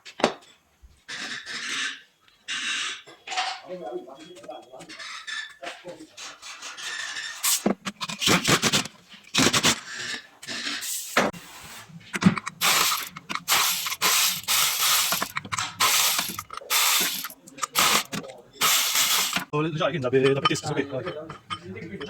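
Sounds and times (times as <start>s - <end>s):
metal hand tool rasping: 12.4s - 19.5s.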